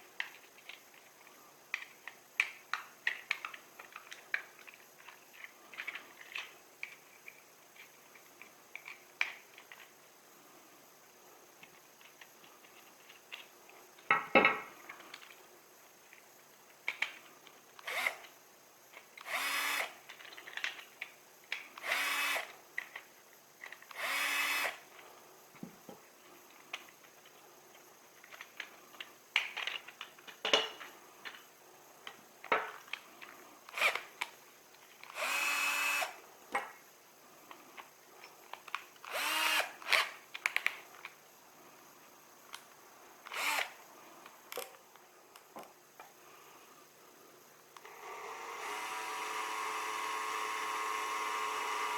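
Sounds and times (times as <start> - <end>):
power drill bursts: 17.8 - 18.2, 19.2 - 20.0, 21.8 - 22.5, 23.9 - 24.8, 33.7 - 34.0, 35.1 - 36.2, 39.1 - 40.2, 43.3 - 43.8, 47.8 - 51.9.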